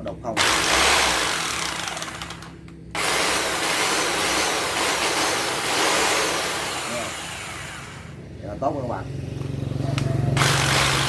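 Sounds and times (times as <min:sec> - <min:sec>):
rotary hammer drill running: 0:00.4 - 0:08.2, 0:10.4 - 0:11.0.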